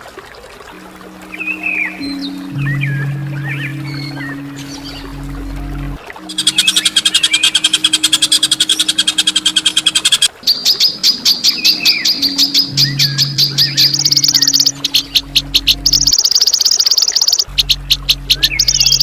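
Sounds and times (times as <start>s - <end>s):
steady low hum: 0.7s - 10.3s, 12.1s - 16.1s, 17.5s - 19.0s
songbird rattling trills: 6.3s - 19.0s.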